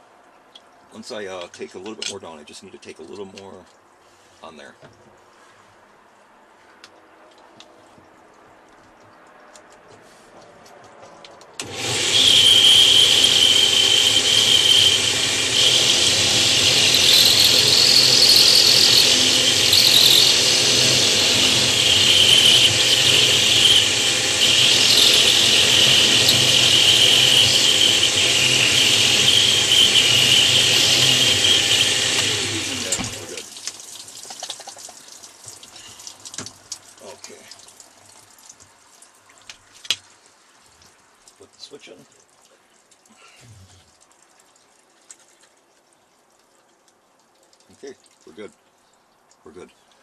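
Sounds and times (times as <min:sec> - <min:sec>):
router grinding stone tile: 0:11.6 - 0:33.4.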